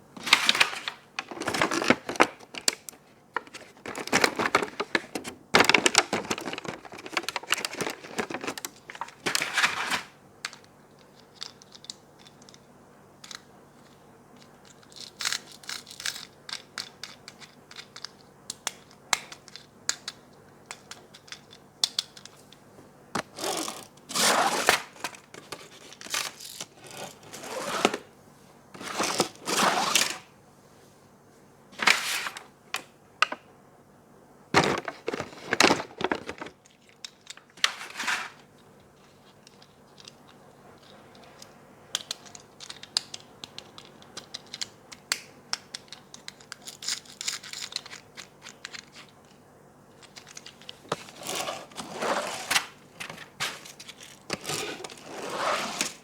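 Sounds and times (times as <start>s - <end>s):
packaging tearing and rustling: 0.2s - 10.2s, 23.3s - 28.1s, 28.8s - 30.3s, 31.8s - 32.5s, 34.6s - 38.5s, 50.1s - 56.0s.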